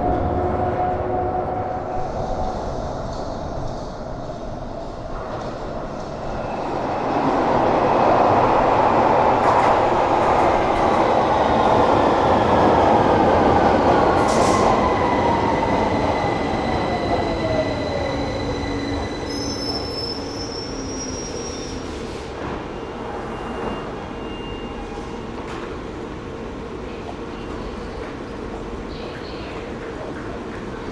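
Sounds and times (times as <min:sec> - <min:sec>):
train rumbling on rails: 0:00.0 - 0:30.9
high wheel squeal: 0:14.4 - 0:25.1.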